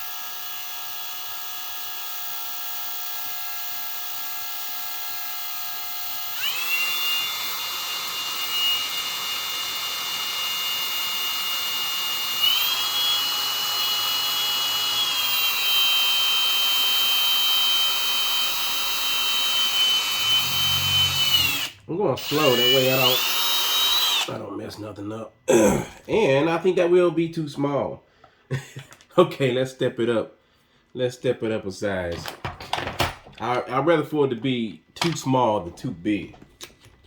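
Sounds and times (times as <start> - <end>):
electric drill boring a hole: 0.0 - 24.4.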